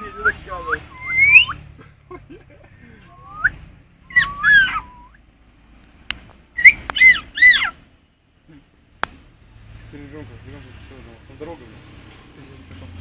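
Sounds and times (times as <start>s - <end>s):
parrot whistling: 0.0s - 1.6s, 3.2s - 5.2s, 6.6s - 7.7s.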